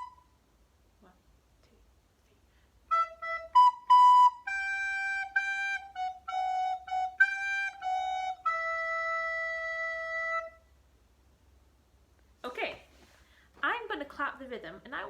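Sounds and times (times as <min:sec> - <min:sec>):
recorder melody: 0:00.0 - 0:00.3, 0:02.9 - 0:10.7.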